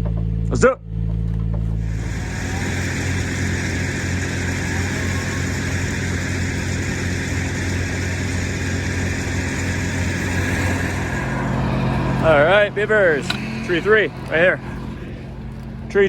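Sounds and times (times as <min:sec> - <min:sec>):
large engine running: 0:00.0 - 0:16.0
steady hiss: 0:01.8 - 0:15.1.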